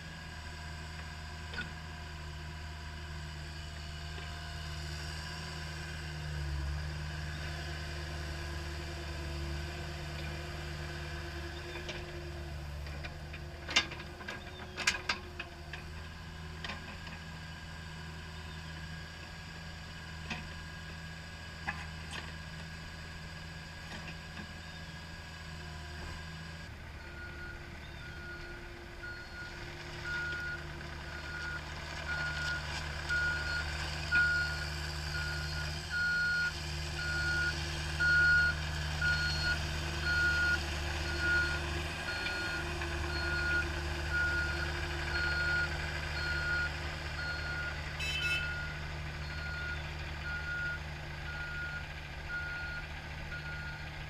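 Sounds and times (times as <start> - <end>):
excavator diesel engine running: 0.0 - 54.0
warning alarm beeping: 46.2 - 52.7.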